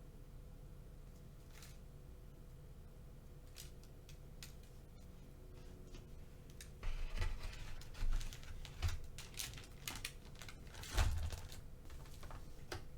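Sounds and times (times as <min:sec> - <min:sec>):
packaging crinkling and clicking: 0:06.5 - 0:12.9.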